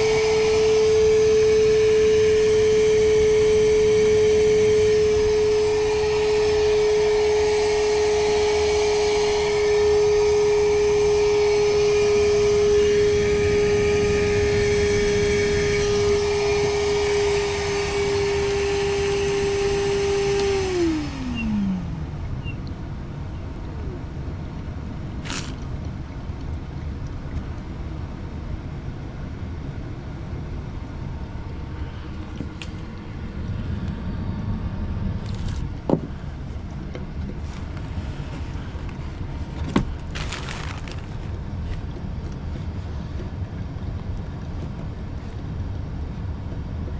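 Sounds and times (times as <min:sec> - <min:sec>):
vacuum motor whining: 0:00.0 - 0:25.7.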